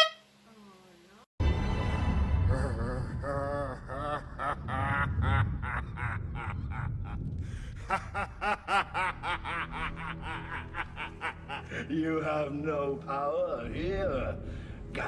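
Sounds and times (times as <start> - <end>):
person laughing: 2.5 - 11.8.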